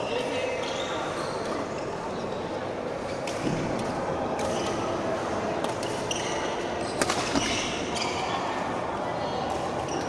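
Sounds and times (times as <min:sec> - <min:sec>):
racket hitting shuttlecock: 0:07.0 - 0:07.7
shoes squeaking on court floor: 0:07.4 - 0:08.4.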